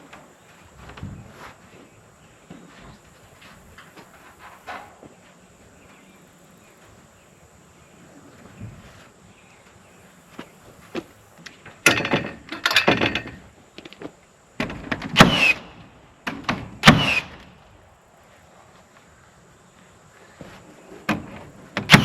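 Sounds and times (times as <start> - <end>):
clattering and knocking: 11.8 - 13.5.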